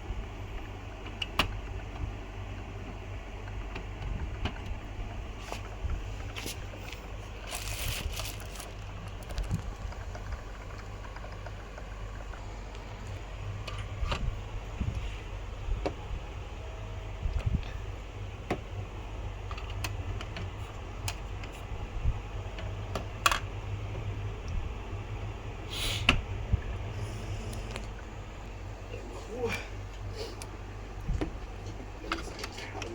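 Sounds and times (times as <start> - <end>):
steady low hum: 0.0 - 32.9
rustling: 5.4 - 10.0.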